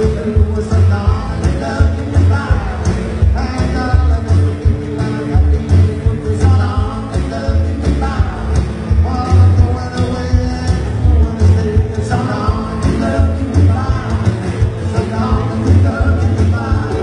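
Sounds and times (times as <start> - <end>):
person singing: 0.0 - 17.0
pulsing bass line: 0.0 - 17.0
rock and roll band: 0.0 - 17.0.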